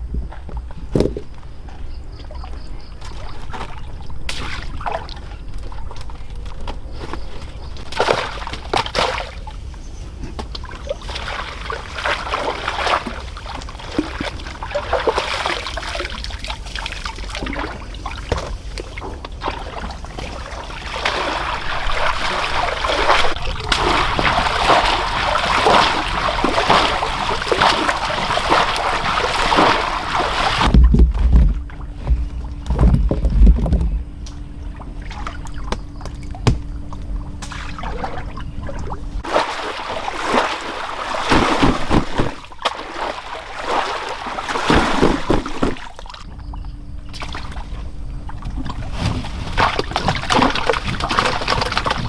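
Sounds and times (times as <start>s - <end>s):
water splashing and sloshing: 0.0s - 52.0s
low rumble: 30.7s - 39.2s.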